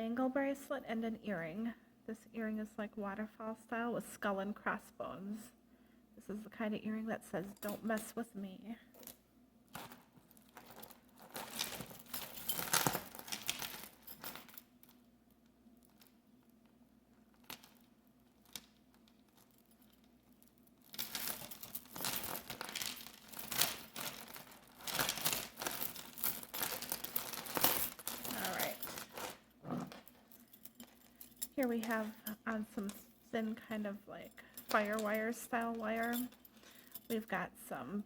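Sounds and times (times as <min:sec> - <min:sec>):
plastic bag crinkling: 0:09.8 - 0:14.1, 0:17.4 - 0:32.4.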